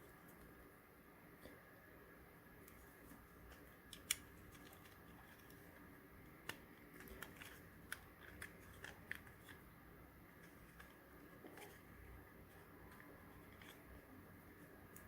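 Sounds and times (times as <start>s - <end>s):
plastic parts clicking: 3.4s - 9.7s.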